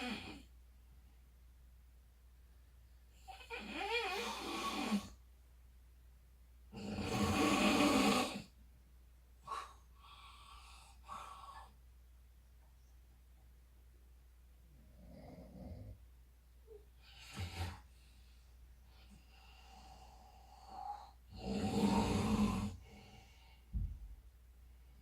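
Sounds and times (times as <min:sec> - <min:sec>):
person snoring: 0:06.7 - 0:08.5, 0:19.4 - 0:23.3.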